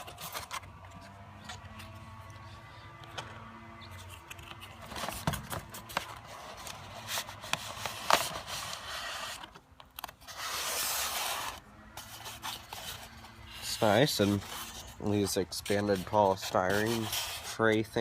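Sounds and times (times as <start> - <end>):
scraping rub: 10.2 - 18.0.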